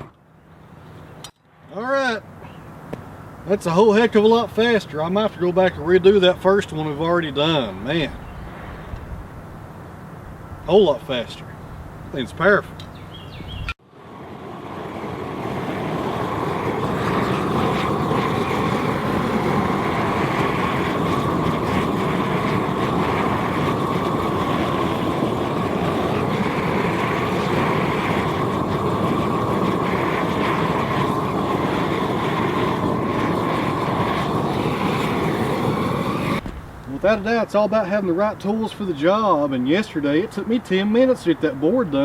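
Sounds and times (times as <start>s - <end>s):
propane torch burning: 13.7s - 42.0s.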